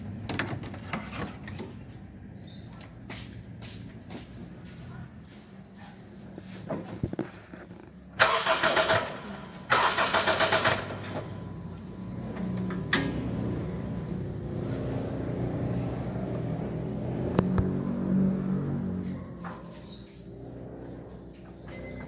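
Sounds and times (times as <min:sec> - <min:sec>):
engine starter cranking: 0:08.2 - 0:11.4.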